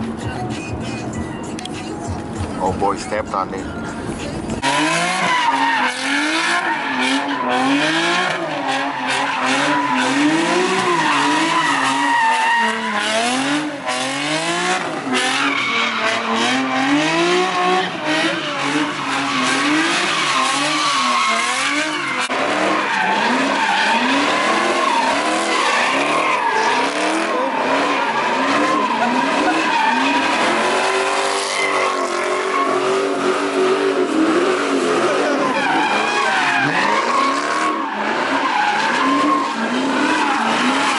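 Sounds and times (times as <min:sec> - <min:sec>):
car engine revving: 0:01.6 - 0:40.9
tyres squealing: 0:08.6 - 0:14.0, 0:22.8 - 0:40.9.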